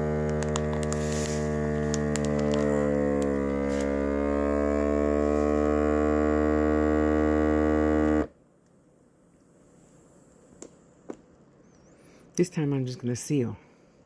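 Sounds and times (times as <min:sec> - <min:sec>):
vacuum sealer pump humming: 0:00.0 - 0:08.4.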